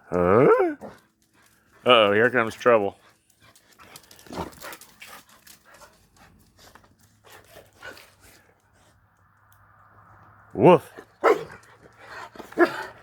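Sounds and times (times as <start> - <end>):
faint clicks and rustles: 0.8 - 9.8.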